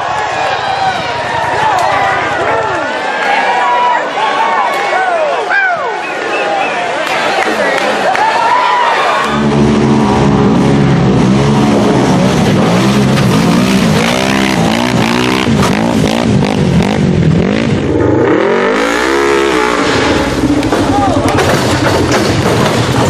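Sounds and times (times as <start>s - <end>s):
off-road vehicle engine revving: 9.2s - 23.0s.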